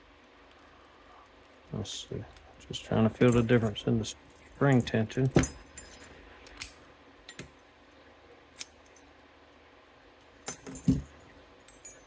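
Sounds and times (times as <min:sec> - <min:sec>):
metallic clinks: 0:03.2 - 0:07.4, 0:10.4 - 0:12.0.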